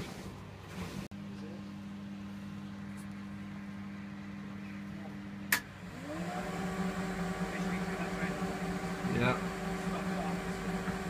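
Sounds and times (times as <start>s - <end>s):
washing machine humming: 0.0s - 11.0s
motor whining: 5.8s - 11.0s.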